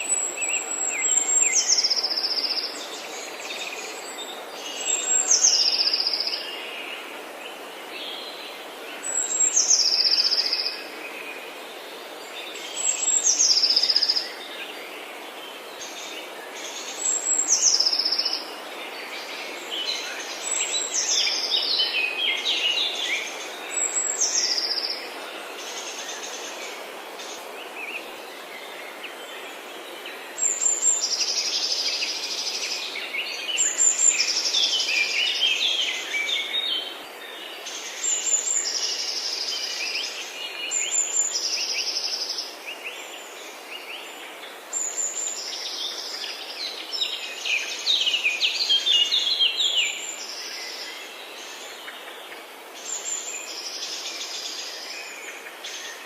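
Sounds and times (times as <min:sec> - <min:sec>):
steady background hiss: 0:00.0 - 0:56.0.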